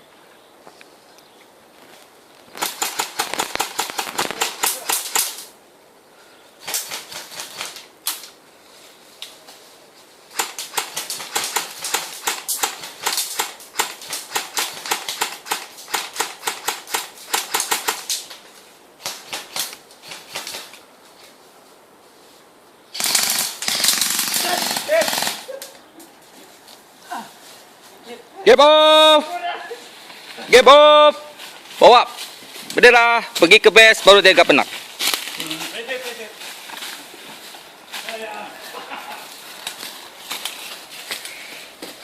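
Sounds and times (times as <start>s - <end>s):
airsoft guns firing bursts: 2.6s - 5.5s, 6.6s - 7.8s, 10.4s - 18.1s, 23.0s - 25.5s.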